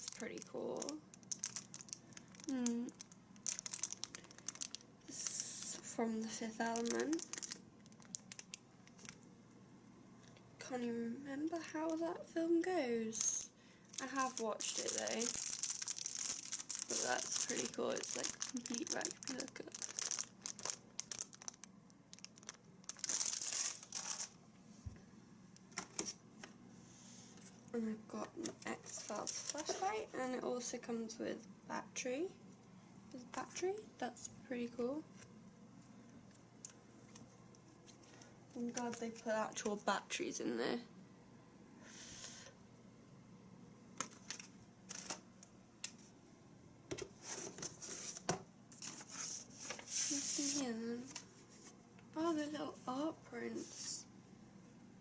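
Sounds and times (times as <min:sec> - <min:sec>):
packaging crinkling and clicking: 0:00.0 - 0:05.7, 0:06.7 - 0:09.3, 0:13.9 - 0:24.4, 0:25.6 - 0:26.6, 0:28.3 - 0:30.0, 0:44.0 - 0:46.0
packaging tearing: 0:00.0 - 0:05.8, 0:06.7 - 0:09.2, 0:14.0 - 0:24.4, 0:28.8 - 0:30.0, 0:44.0 - 0:45.2.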